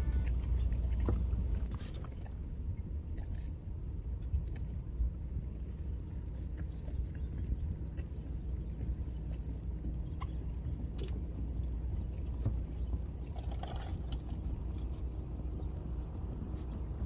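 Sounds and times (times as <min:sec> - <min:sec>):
boat engine low rumble: 0:00.0 - 0:17.0
faint clicks and knocks: 0:05.5 - 0:17.0.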